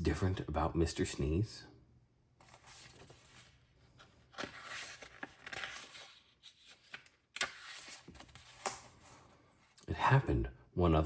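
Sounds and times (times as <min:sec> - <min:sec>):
paper rustling: 0:02.4 - 0:09.3.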